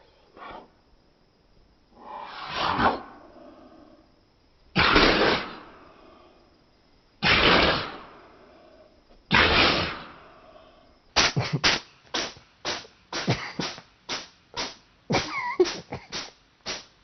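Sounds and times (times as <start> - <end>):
cat sneezing: 4.8 - 5.6, 7.2 - 8.0, 9.3 - 10.1, 11.2 - 17.0.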